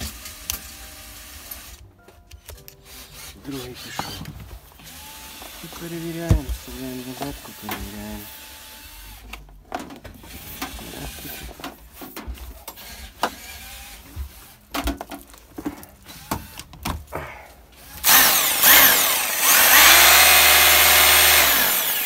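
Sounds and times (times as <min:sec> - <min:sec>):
rotary hammer motor running: 0:17.8 - 0:22.0.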